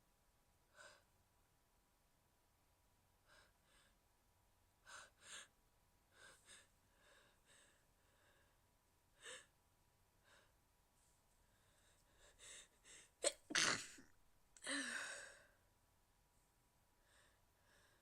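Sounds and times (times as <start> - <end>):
woman sneezing: 13.2 - 14.0.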